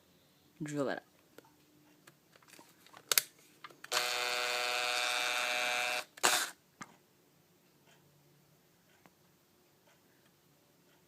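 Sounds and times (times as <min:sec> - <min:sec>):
electric drill motor running: 0:03.9 - 0:06.6.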